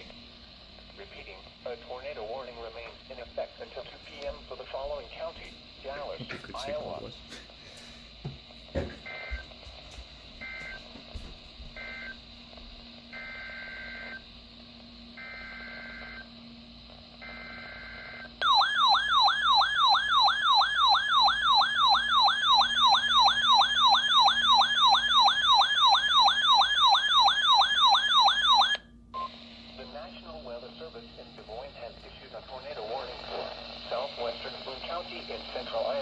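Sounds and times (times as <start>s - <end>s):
electronic warble alarm: 9.0s - 9.6s, 10.4s - 11.0s, 11.7s - 12.3s, 13.1s - 14.3s, 15.1s - 16.4s, 17.2s - 29.6s.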